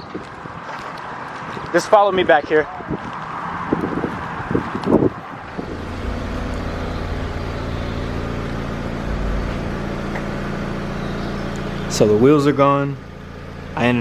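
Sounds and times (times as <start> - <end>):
machine humming: 5.4 - 14.0.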